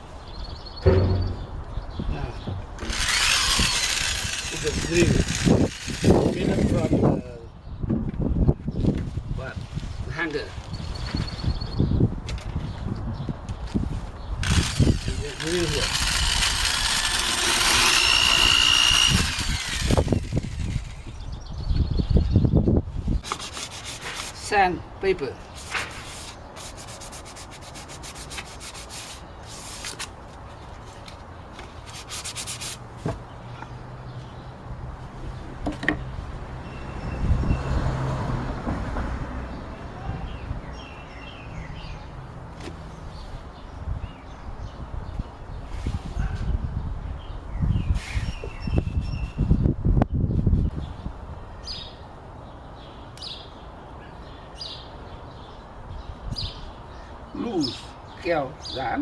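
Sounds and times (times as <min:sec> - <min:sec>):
bird chirping: 0:00.2 - 0:03.7
knock: 0:00.8 - 0:01.5
low knocking rumble: 0:00.8 - 0:02.8
sandpaper rubbing: 0:02.9 - 0:07.0, 0:14.4 - 0:21.0, 0:23.2 - 0:24.5, 0:25.5 - 0:30.2, 0:31.6 - 0:32.9.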